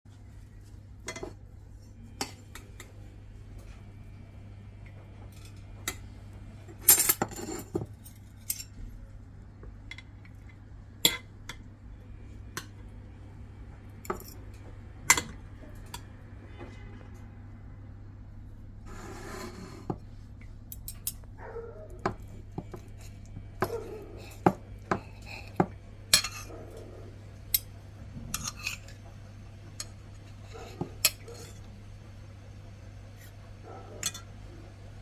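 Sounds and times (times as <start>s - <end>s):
low steady hum: 0.1s - 35.0s
dishes and utensils clinking: 6.8s - 8.8s, 14.0s - 16.9s, 22.0s - 26.8s, 27.5s - 29.1s, 33.7s - 34.4s.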